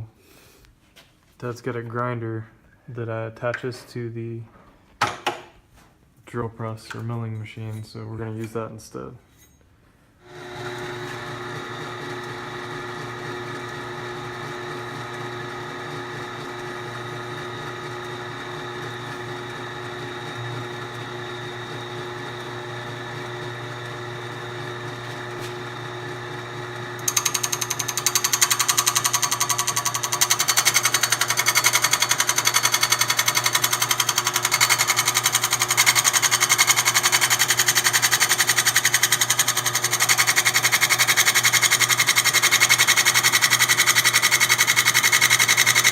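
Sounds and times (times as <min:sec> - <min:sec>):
milling machine humming: 0:10.3 - 0:45.9
loud grinding on metal bolt: 0:26.9 - 0:45.9.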